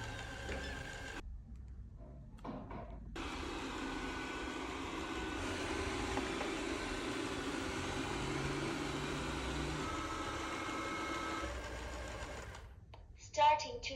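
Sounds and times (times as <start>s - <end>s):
robot vacuum motor whir: 0.0s - 1.2s, 3.2s - 12.7s.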